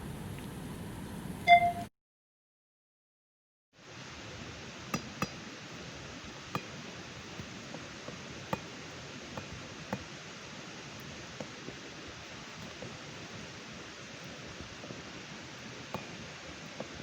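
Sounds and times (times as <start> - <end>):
campfire crackling and popping: 4.8 - 17.0.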